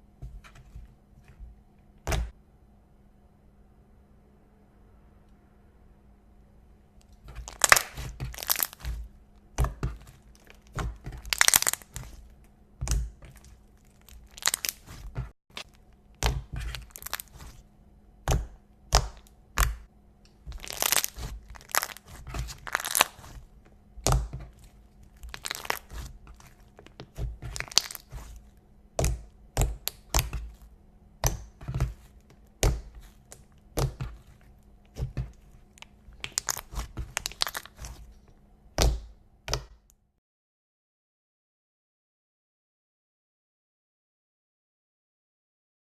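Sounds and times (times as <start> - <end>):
slime crackling when squeezed: 7.4 - 9.0, 10.3 - 12.1, 13.9 - 15.0, 16.6 - 17.5, 20.5 - 23.4, 25.2 - 26.1, 27.5 - 28.3, 36.2 - 38.0.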